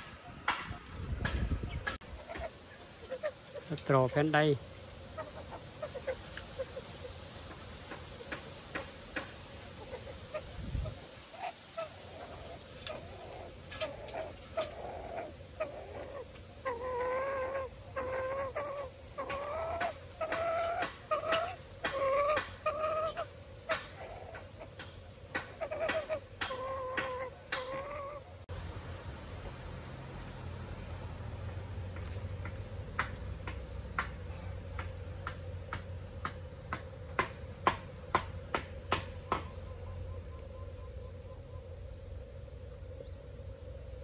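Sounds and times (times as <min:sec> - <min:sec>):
animal calling: 0:02.0 - 0:07.6, 0:09.7 - 0:28.4
low engine hum: 0:28.3 - 0:44.0.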